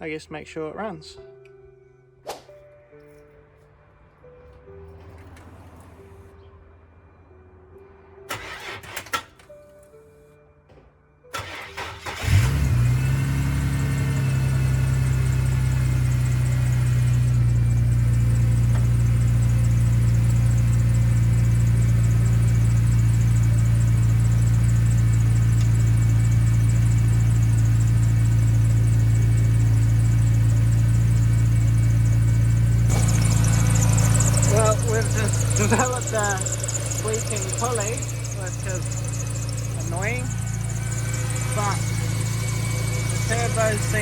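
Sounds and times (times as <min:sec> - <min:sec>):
car engine idling: 0:08.3 - 0:09.8, 0:11.3 - 0:44.0
car engine cranking and starting: 0:08.3 - 0:10.0, 0:11.3 - 0:44.0.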